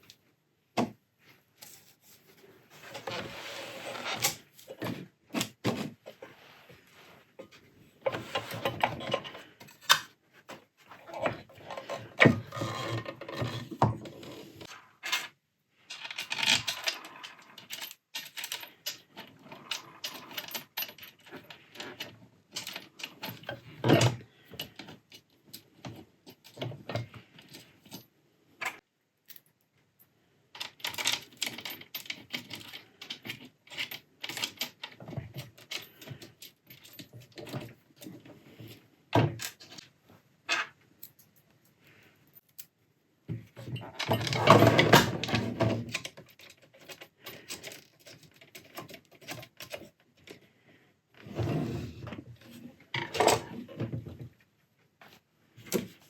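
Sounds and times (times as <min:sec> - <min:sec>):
small parts and tools clicking: 0:14.6 - 0:29.8, 0:30.5 - 0:39.9, 0:43.5 - 0:50.5.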